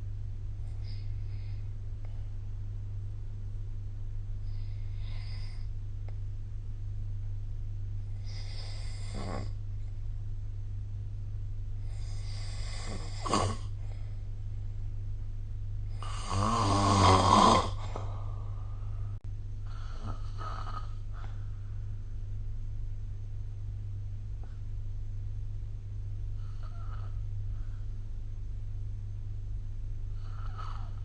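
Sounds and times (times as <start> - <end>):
steady low hum: 0.0 - 31.0
person snoring: 8.1 - 9.6, 11.8 - 13.8, 15.9 - 18.8, 19.6 - 21.4, 30.1 - 31.0.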